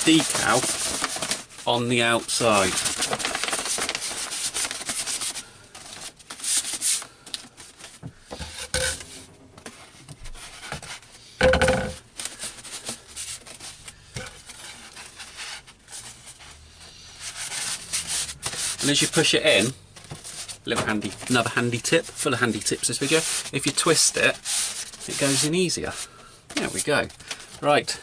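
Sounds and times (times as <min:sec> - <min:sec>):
decal sheet rustling and rubbing: 0:00.0 - 0:27.8
sheet scraping: 0:07.8 - 0:26.0.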